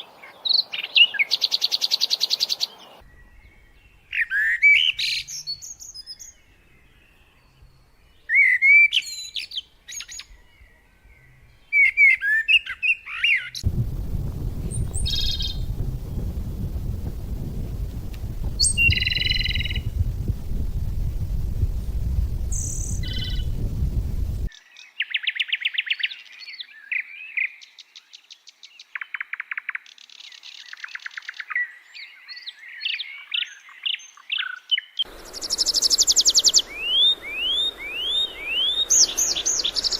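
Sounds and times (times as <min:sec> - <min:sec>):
songbirds singing: 0:00.0 - 0:39.9
loud low rumble: 0:13.6 - 0:24.5.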